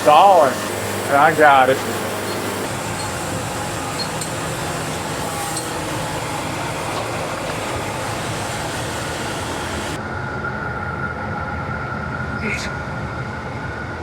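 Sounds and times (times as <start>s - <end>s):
saw blade hiss cutting log: 0.0s - 10.0s
sawmill engine droning: 0.0s - 14.0s
steady whine: 0.0s - 14.0s.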